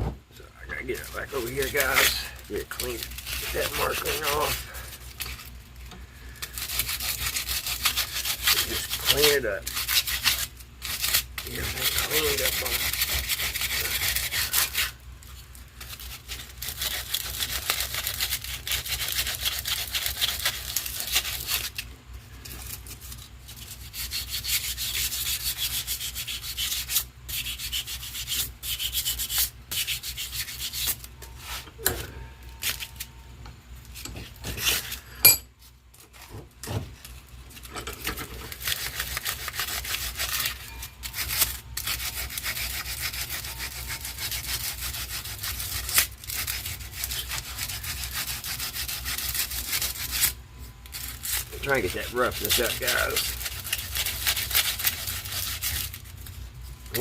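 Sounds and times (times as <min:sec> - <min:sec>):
sandpaper rubbing on wood: 0:00.8 - 0:05.4, 0:06.4 - 0:15.0, 0:15.8 - 0:21.8, 0:22.9 - 0:31.6, 0:38.5 - 0:50.4, 0:51.0 - 0:56.0.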